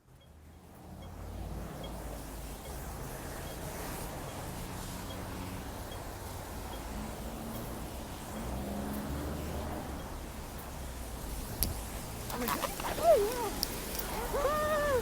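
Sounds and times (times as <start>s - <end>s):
traffic rumble: 7.0s - 15.0s.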